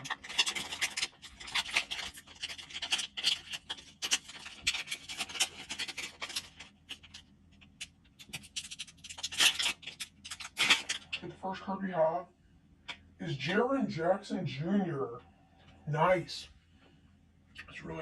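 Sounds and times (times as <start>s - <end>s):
cards rubbing and scraping: 0.0s - 11.2s
wrapper crinkling: 0.0s - 11.2s.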